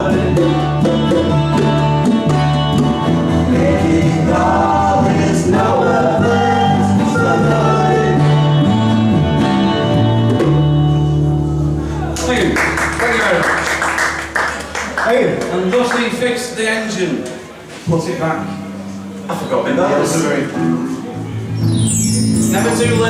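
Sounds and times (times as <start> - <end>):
held low bass notes: 0.0 - 13.4
band playing live: 0.0 - 15.6, 18.5 - 23.0.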